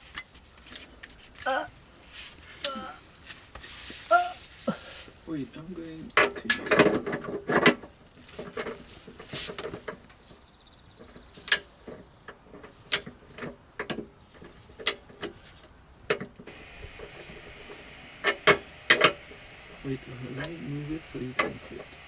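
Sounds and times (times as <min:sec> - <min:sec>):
hand tools clicking and knocking: 0:06.1 - 0:16.6.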